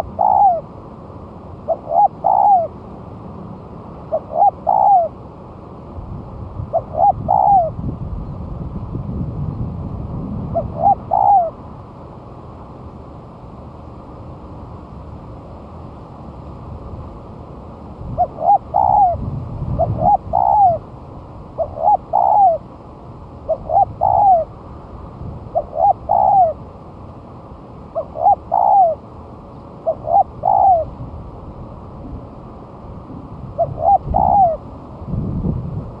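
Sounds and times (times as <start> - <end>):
dove cooing: 0.0 - 0.7, 1.6 - 2.7, 4.1 - 5.2, 6.7 - 7.8, 10.5 - 11.6, 18.1 - 20.9, 21.6 - 22.7, 23.4 - 24.5, 25.5 - 26.6, 27.9 - 29.0, 29.8 - 31.0, 33.1 - 34.7
steady hiss: 0.0 - 36.0.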